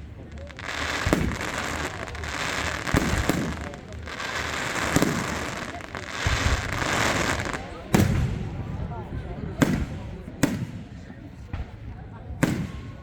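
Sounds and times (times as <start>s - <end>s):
fireworks bangs: 0.0s - 8.8s, 9.5s - 13.0s
fireworks crackling: 0.0s - 8.8s.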